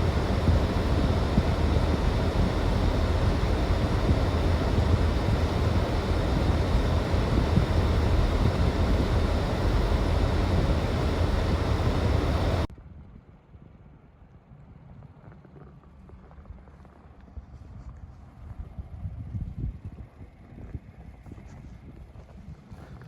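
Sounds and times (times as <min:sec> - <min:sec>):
wind buffeting microphone: 0:00.0 - 0:12.7.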